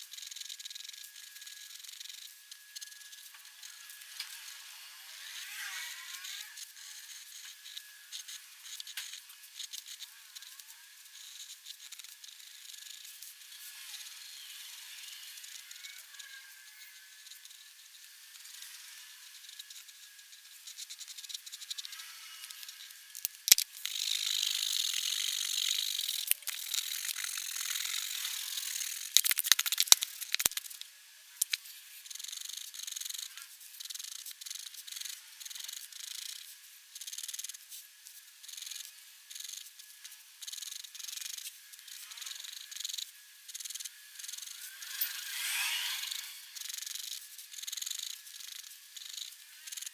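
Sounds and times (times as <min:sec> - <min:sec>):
pen nib scratching on paper: 0:20.7 - 0:30.8
sharp clicks: 0:22.4 - 0:31.6.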